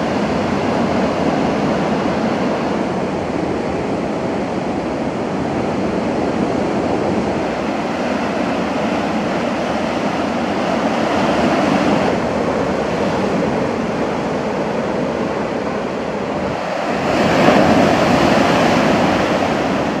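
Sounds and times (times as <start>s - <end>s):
waves breaking on beach: 0.0s - 20.0s.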